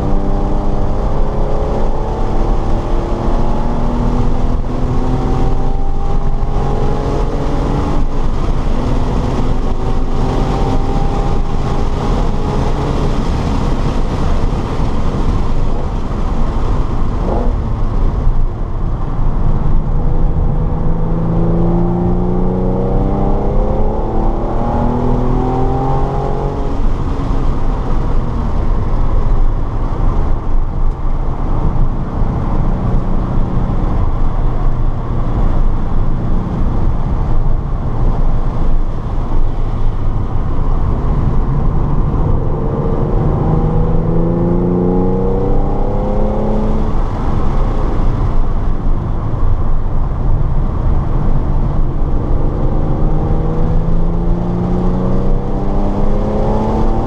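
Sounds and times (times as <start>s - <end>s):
car engine revving: 0.0s - 57.0s
wind and tyre noise: 0.0s - 57.0s.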